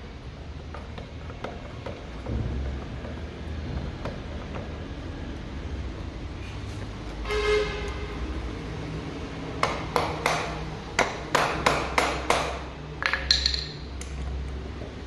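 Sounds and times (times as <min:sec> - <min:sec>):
sharp metallic knocks: 0:09.6 - 0:14.0.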